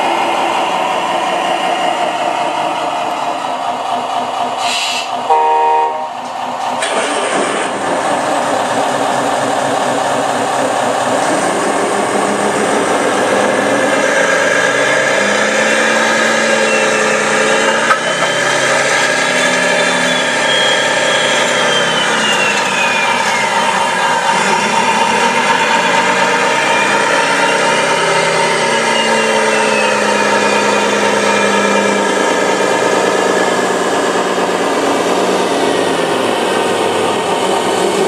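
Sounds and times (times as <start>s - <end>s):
short horn blast: 5.3s - 6.3s.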